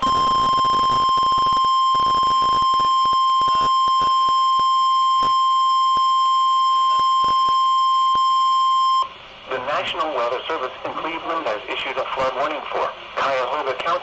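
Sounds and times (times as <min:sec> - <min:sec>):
radio static clicks: 0:00.0 - 0:04.4, 0:06.9 - 0:08.2
high alarm tone: 0:00.0 - 0:09.1.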